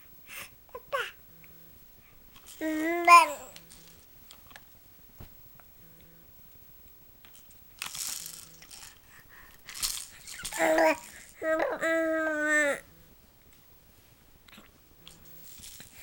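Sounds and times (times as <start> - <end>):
baby babbling: 2.6 - 3.6, 10.2 - 12.9.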